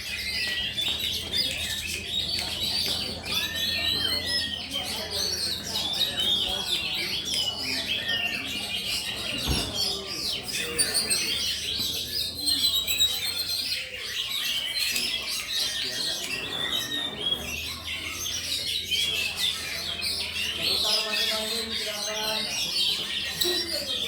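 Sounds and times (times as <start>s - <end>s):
birds singing: 0.0s - 24.0s.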